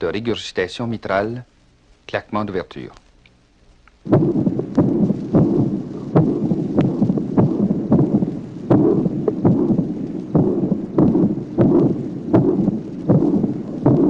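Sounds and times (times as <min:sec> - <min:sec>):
heart opening snap: 0:03.9 - 0:14.0
low rumbling heart murmur: 0:04.1 - 0:14.0
sharp heart beats: 0:04.1 - 0:14.0.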